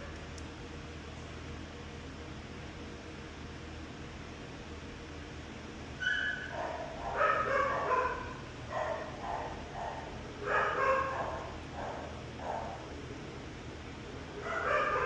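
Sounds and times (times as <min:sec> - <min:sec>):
steady low hum: 0:00.0 - 0:15.0
dog barking and whining: 0:06.0 - 0:12.8, 0:14.4 - 0:15.0.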